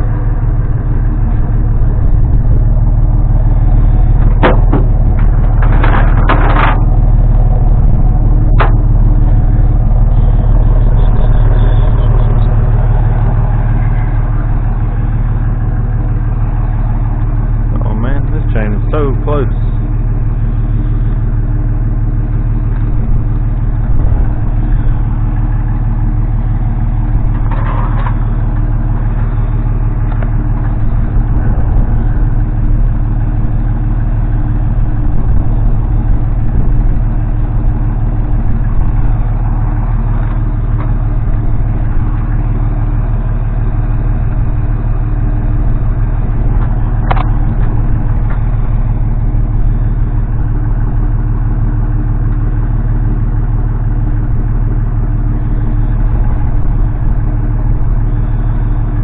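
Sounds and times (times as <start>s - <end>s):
engine idling: 0.0s - 59.0s.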